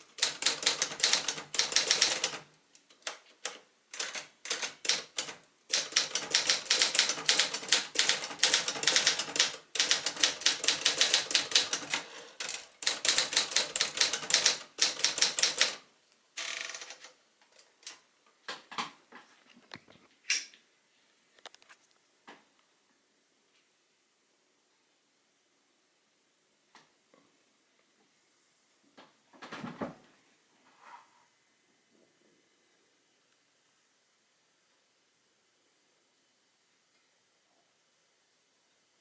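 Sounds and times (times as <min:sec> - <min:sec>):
typewriter key strikes: 0:00.2 - 0:02.4, 0:03.0 - 0:15.8.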